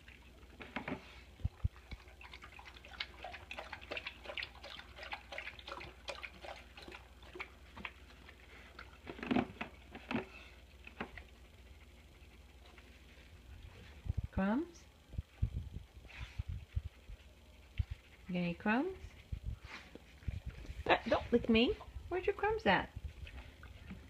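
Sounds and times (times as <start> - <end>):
dog licking food bowl: 1.4 - 9.1.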